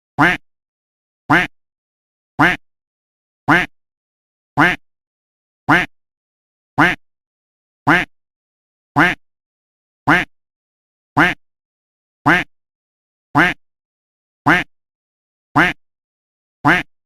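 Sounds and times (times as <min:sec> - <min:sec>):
duck quacking: 0:00.2 - 0:00.4, 0:01.3 - 0:01.5, 0:02.4 - 0:02.6, 0:03.5 - 0:03.7, 0:04.6 - 0:04.8, 0:05.7 - 0:05.9, 0:06.8 - 0:07.0, 0:07.9 - 0:08.1, 0:09.0 - 0:09.2, 0:10.1 - 0:10.3, 0:11.2 - 0:11.4, 0:12.3 - 0:12.5, 0:13.4 - 0:13.6, 0:14.5 - 0:14.7, 0:15.6 - 0:15.8, 0:16.6 - 0:16.9.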